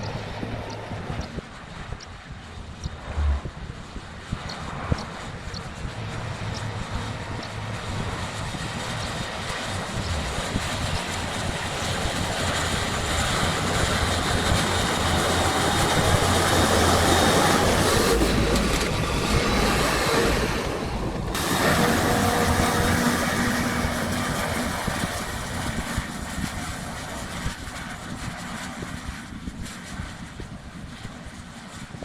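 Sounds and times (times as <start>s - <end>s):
tractor engine under load: 8.7s - 26.4s.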